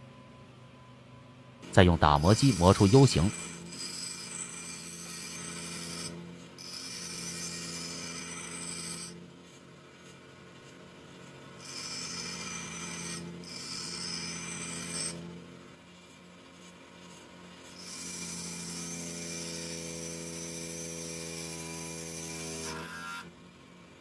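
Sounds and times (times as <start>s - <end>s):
grinder motor hum: 1.6s - 24.0s
grinder rasping on steel: 1.7s - 23.4s.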